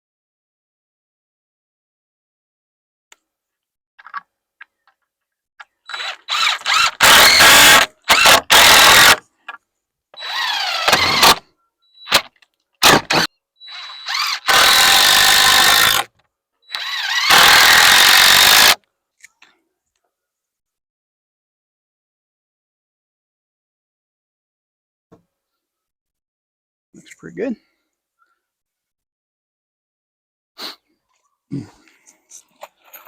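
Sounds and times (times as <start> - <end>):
cordless drill driving screws: 5.8 - 9.2, 10.2 - 11.4, 12.0 - 16.1, 16.7 - 18.8.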